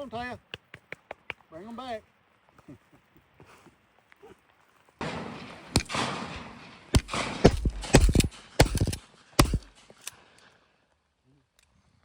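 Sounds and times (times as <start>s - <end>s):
shotguns firing: 5.0s - 10.1s.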